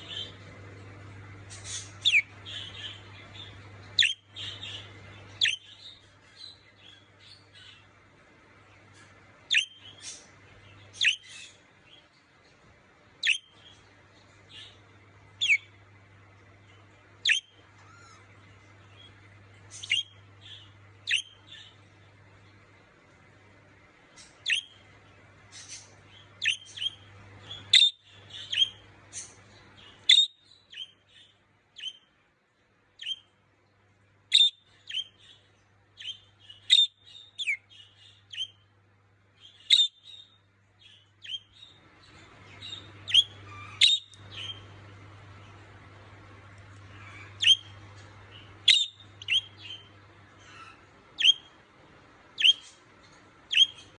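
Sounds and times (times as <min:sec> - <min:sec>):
faint low hum: 0:00.0 - 0:54.0
budgerigar chirping: 0:01.6 - 0:07.8, 0:09.5 - 0:10.2, 0:10.8 - 0:11.6, 0:13.2 - 0:13.7, 0:15.4 - 0:15.7, 0:17.2 - 0:18.2, 0:19.7 - 0:21.8, 0:24.2 - 0:24.8, 0:25.5 - 0:32.1, 0:33.0 - 0:33.3, 0:34.3 - 0:35.4, 0:36.0 - 0:38.6, 0:39.4 - 0:41.8, 0:42.5 - 0:44.7, 0:46.9 - 0:51.6, 0:52.4 - 0:52.8, 0:53.5 - 0:54.0.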